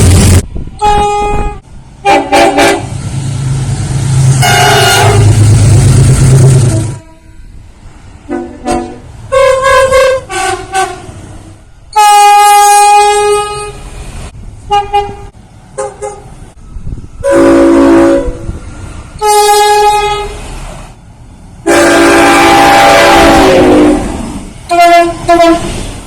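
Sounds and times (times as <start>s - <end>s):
train air horn blasts: 0.8s - 3.0s, 4.3s - 5.6s, 6.4s - 7.6s, 8.3s - 11.2s, 11.9s - 13.9s, 14.7s - 16.3s, 17.2s - 18.6s, 19.2s - 20.5s, 21.6s - 25.9s.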